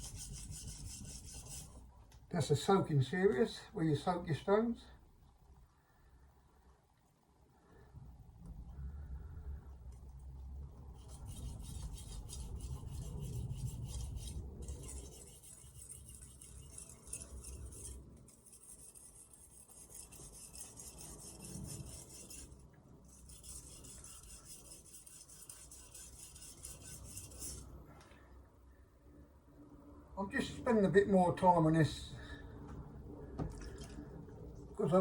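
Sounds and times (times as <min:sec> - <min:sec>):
knife scraping on whetstone: 0:11.0 - 0:27.7.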